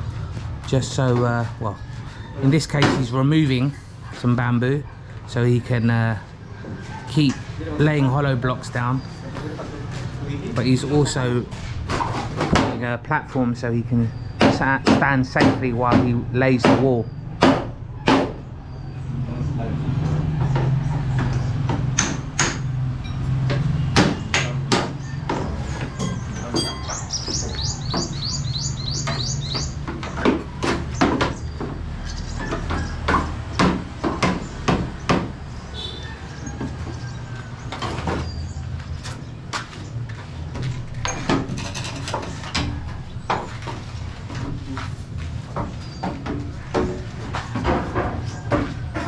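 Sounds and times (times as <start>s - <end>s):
knocks and taps of construction work: 2.6s - 3.3s, 9.0s - 13.6s, 14.4s - 18.4s, 20.0s - 49.0s
bird chirping: 13.6s - 14.8s, 16.0s - 21.7s, 24.9s - 40.0s, 45.6s - 47.5s.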